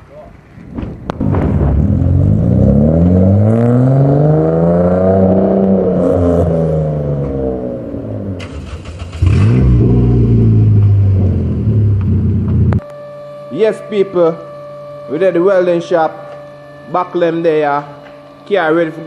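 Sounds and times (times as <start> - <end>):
car engine revving: 1.1 - 12.8.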